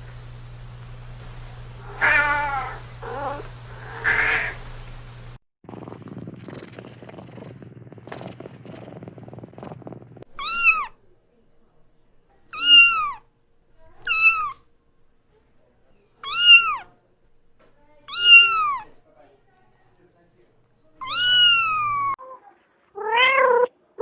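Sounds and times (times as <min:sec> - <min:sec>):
cat meowing: 0:01.9 - 0:03.4, 0:04.0 - 0:04.6, 0:10.3 - 0:11.0, 0:12.5 - 0:13.2, 0:14.0 - 0:14.6, 0:16.2 - 0:16.9, 0:18.1 - 0:19.0, 0:21.0 - 0:22.2, 0:23.0 - 0:23.7
cat purring: 0:05.7 - 0:11.0, 0:18.1 - 0:18.9.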